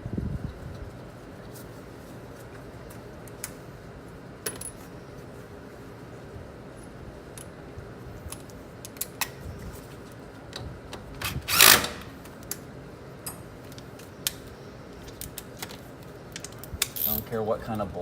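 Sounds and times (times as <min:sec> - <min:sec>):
power tool running: 0:11.4 - 0:12.1.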